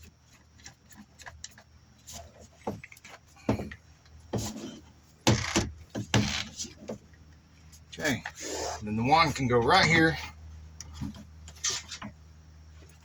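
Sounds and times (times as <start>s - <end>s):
sharp plastic knocks: 5.2s - 7.0s.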